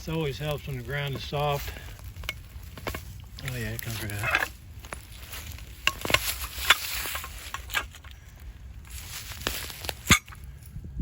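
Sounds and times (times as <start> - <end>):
footsteps: 0.0 - 10.4
rustling: 0.0 - 10.6.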